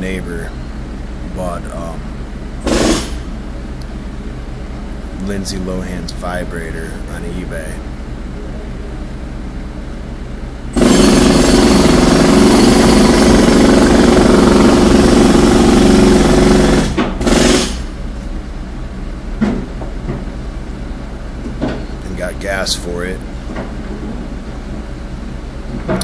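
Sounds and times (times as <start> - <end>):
jackhammer hammering: 2.6 - 3.3, 10.7 - 18.0.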